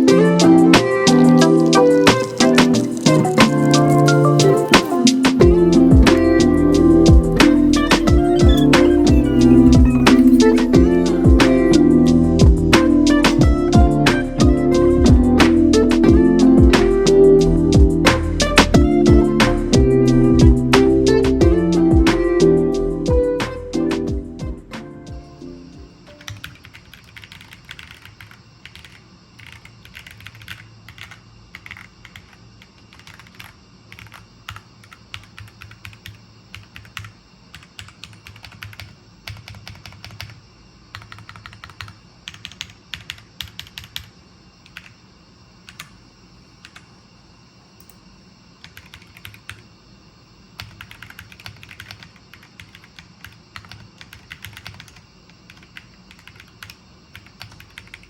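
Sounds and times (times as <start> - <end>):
mechanical keyboard typing: 0.8 - 11.7, 26.1 - 44.1, 48.6 - 49.6, 50.6 - 58.0.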